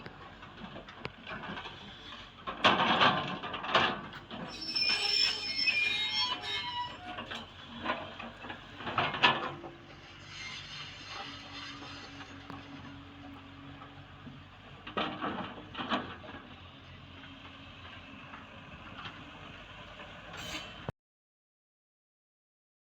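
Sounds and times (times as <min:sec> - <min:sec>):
excavator diesel engine running: 0:00.0 - 0:20.9.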